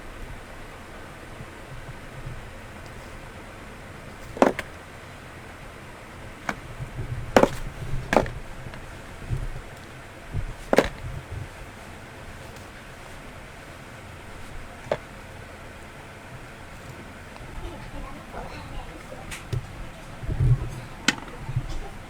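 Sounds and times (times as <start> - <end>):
dull low thuds: 19.1 - 22.0.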